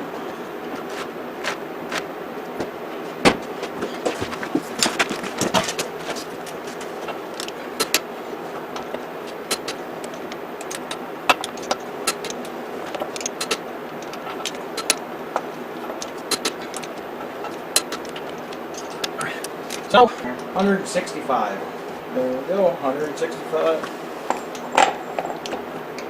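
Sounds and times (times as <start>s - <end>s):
steady background noise: 0.0s - 26.0s
torque wrench clicking on lug nuts: 8.8s - 15.0s, 15.8s - 19.9s.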